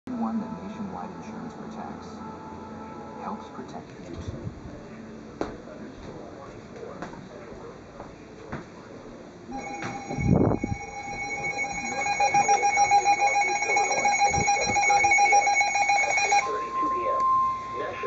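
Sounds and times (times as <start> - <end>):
tv programme audio: 9.0 - 18.0
electronic alert tone: 9.5 - 18.0.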